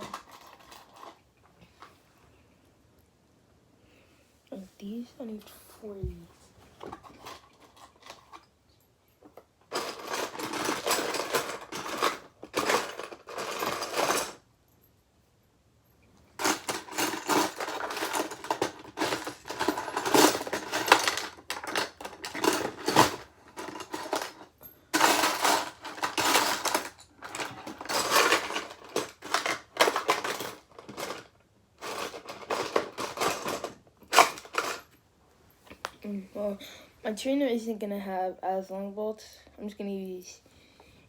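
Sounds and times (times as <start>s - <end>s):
metal bolts and screws rattling: 9.2s - 14.4s, 16.4s - 35.0s.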